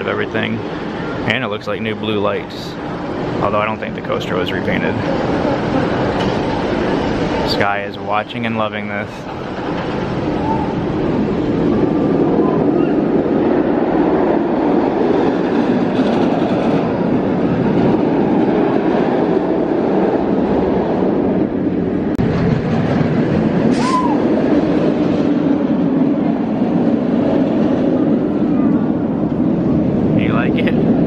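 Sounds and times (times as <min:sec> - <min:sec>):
roller coaster train rumbling: 0:00.0 - 0:31.0
short high squeal: 0:23.7 - 0:24.2.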